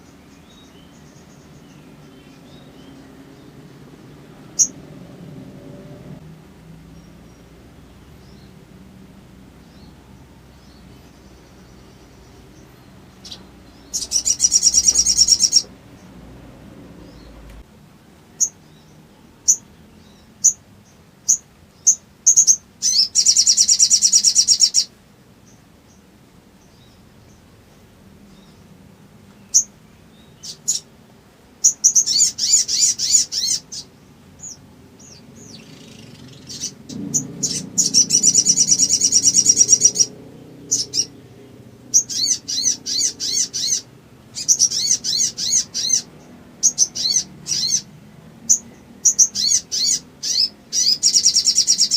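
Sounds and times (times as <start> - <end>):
bird rattling trills: 13.2 - 15.7, 35.4 - 40.1.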